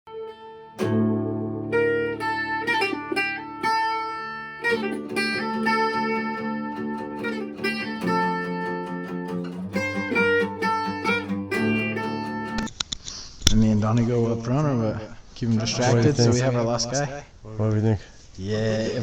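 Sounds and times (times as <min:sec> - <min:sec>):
plucked guitar music: 0:00.1 - 0:12.8.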